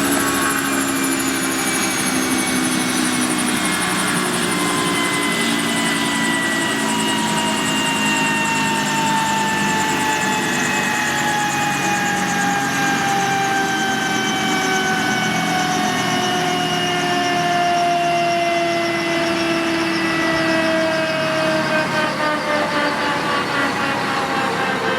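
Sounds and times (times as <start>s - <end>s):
helicopter rotor beat: 0.0s - 24.9s
helicopter turbine whine: 0.0s - 24.9s.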